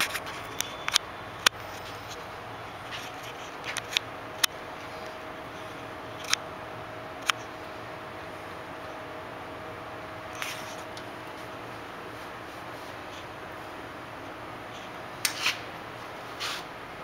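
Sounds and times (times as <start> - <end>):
sharp metallic clicks: 0.0 - 2.2, 2.9 - 4.6, 6.2 - 6.4, 7.2 - 7.5
faint steady hum: 0.0 - 17.0.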